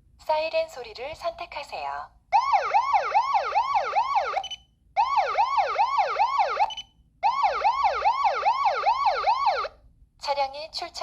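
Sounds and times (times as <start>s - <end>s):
electronic siren yelping: 2.4s - 9.7s.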